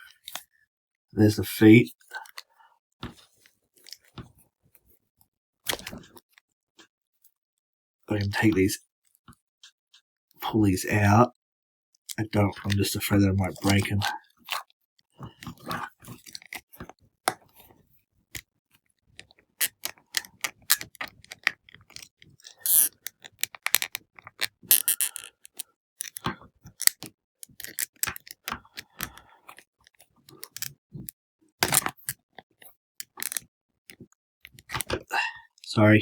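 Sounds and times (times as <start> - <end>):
plastic figure joints clicking: 19.6 - 29.6, 30.3 - 30.8, 31.6 - 32.2, 33.0 - 33.4.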